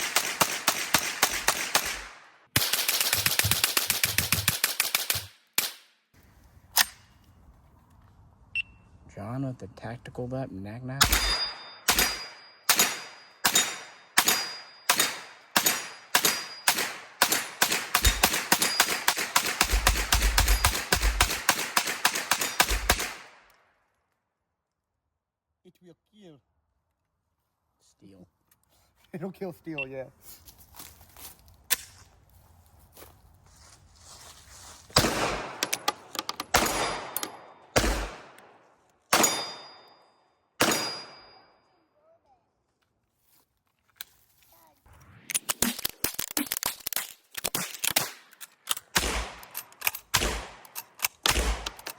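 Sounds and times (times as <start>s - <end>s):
gunshots: 0.0s - 5.8s, 11.0s - 23.4s, 35.0s - 39.8s, 40.6s - 41.3s, 48.9s - 51.9s
high ringing of steel targets: 11.0s - 21.3s, 22.3s - 23.0s, 36.5s - 38.0s, 39.1s - 41.7s.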